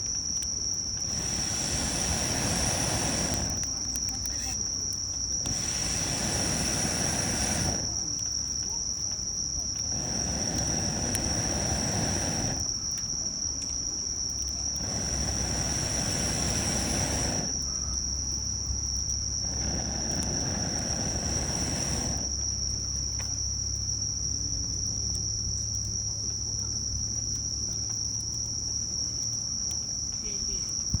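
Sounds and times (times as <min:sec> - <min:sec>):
insects trilling: 0:00.0 - 0:31.0
rushes of hissing noise: 0:00.8 - 0:04.7, 0:05.3 - 0:08.4, 0:09.6 - 0:13.0, 0:14.4 - 0:23.7.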